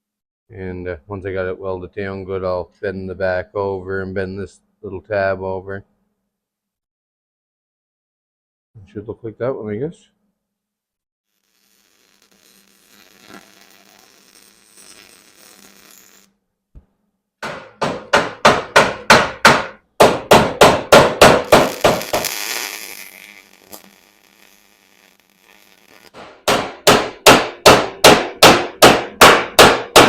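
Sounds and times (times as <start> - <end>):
hammer striking metal: 17.4 - 22.2, 26.2 - 30.0.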